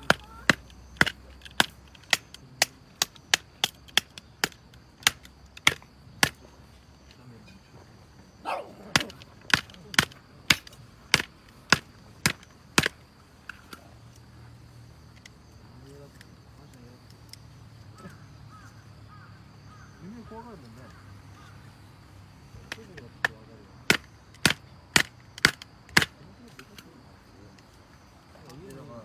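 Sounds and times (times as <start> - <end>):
sharp knocks: 0.0 - 6.5, 8.9 - 13.0, 22.7 - 26.1.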